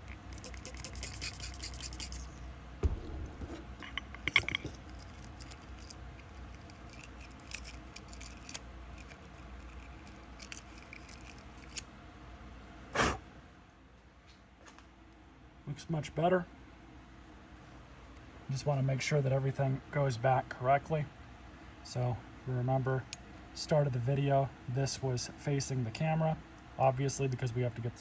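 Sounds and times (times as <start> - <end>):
brush scrubbing metal part: 0.3 - 2.3.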